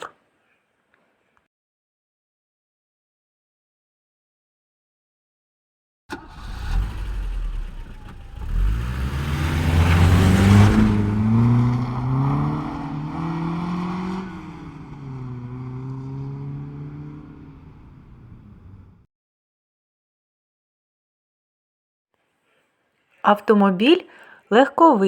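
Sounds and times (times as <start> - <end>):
car engine revving: 6.1 - 19.0.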